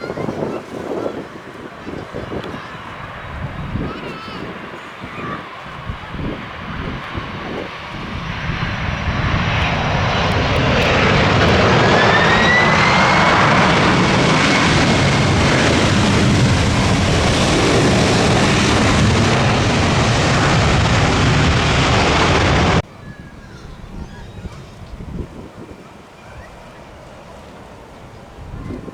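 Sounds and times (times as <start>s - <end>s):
airliner engines passing: 0.0s - 28.9s.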